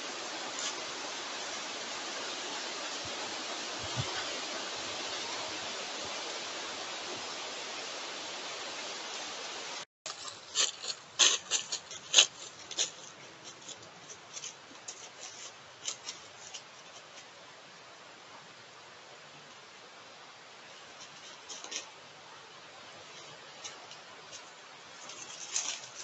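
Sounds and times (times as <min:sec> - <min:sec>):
outdoor hiss: 0:00.0 - 0:26.0
animal moving in dry leaves: 0:10.1 - 0:17.4, 0:20.6 - 0:22.0, 0:23.0 - 0:26.0.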